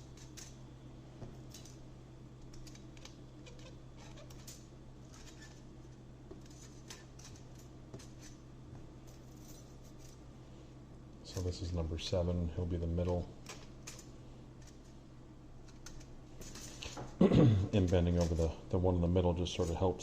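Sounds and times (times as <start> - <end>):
sheet metal parts clicking and scraping: 0.0 - 0.6, 1.4 - 1.8, 2.4 - 5.7, 6.4 - 8.4, 9.0 - 10.2, 13.0 - 15.0, 15.6 - 17.0, 17.8 - 18.5
steady low hum: 0.0 - 20.0.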